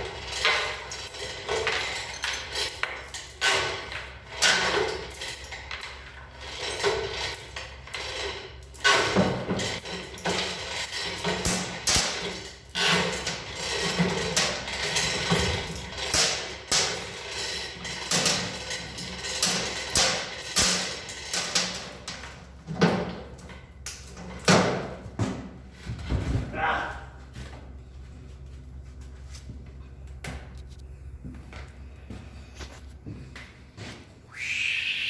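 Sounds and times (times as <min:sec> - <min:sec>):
metal clanks and knocks: 0:00.0 - 0:26.5
low machine hum: 0:09.4 - 0:35.0.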